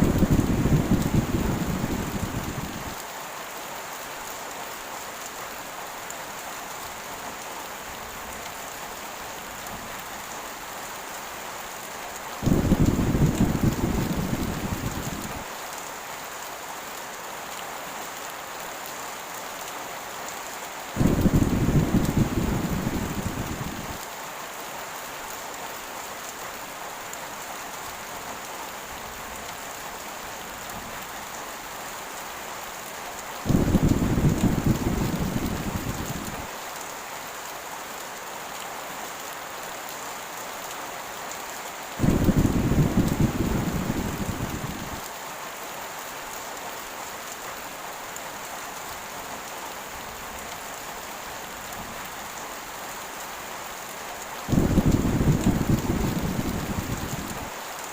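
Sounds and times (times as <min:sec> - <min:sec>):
thunder rumbling: 0:00.0 - 0:03.0, 0:12.4 - 0:15.4, 0:21.0 - 0:24.0, 0:33.5 - 0:36.4, 0:42.0 - 0:45.0, 0:54.5 - 0:57.5
heavy rain: 0:00.0 - 0:57.9.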